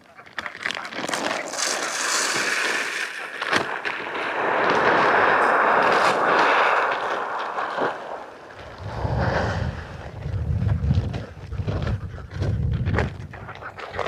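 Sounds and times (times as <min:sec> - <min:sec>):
grain pouring into bucket: 0:01.0 - 0:03.7.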